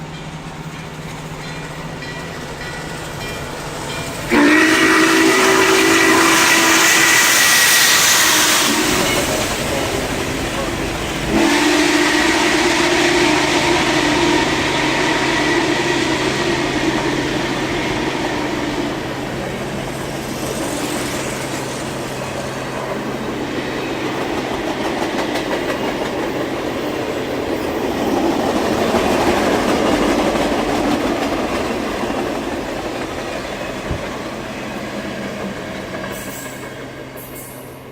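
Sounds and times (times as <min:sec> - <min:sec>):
steam train rolling past: 0:00.0 - 0:37.9
wheels clicking over rail joints: 0:21.3 - 0:37.6.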